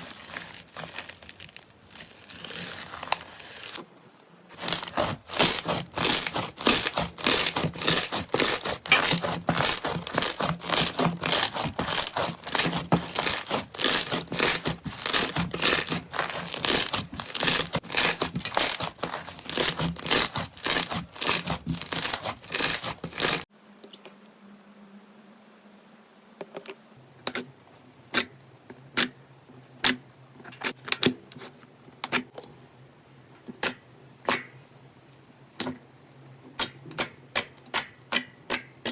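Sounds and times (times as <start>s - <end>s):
slime crunching and crackling: 0.0s - 3.8s, 4.5s - 23.5s.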